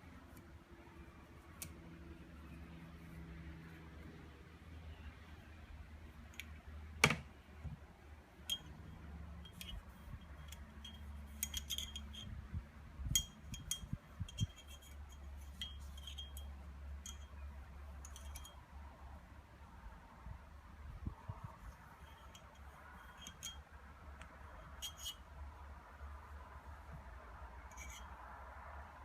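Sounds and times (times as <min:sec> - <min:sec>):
metallic clicks of pistol parts: 0:09.4 - 0:12.3.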